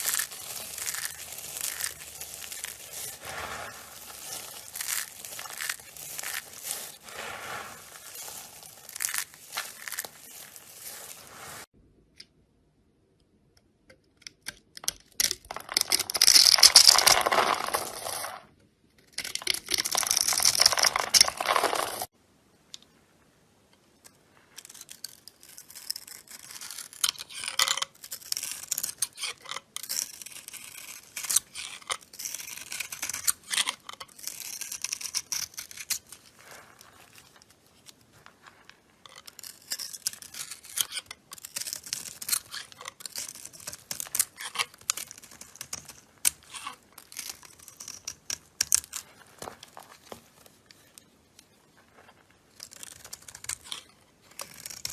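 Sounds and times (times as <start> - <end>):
knife cutting soap crunchily: 0.0 - 11.7, 24.6 - 50.4
knife scraping and shaving soap: 0.0 - 11.7, 24.1 - 54.9.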